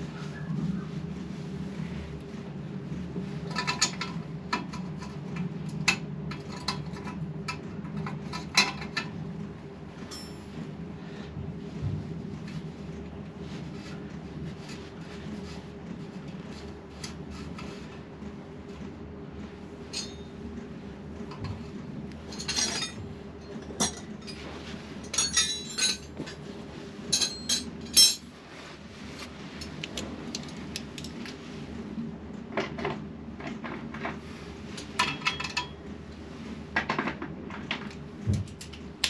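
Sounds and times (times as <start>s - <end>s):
metal tools clinking: 22.3s - 23.0s, 25.1s - 26.0s, 27.2s - 28.2s.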